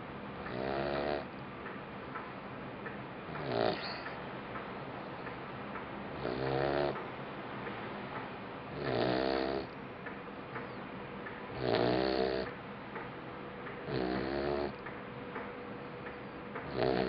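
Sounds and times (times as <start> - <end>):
puppy snoring: 0.4 - 1.3, 3.3 - 4.2, 6.1 - 7.0, 8.7 - 9.8, 11.5 - 12.6, 13.8 - 14.8, 16.6 - 17.0.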